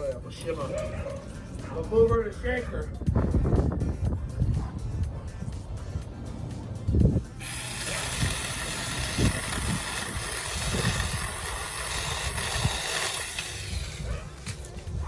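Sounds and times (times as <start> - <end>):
electric chainsaw whine: 7.4 - 14.4.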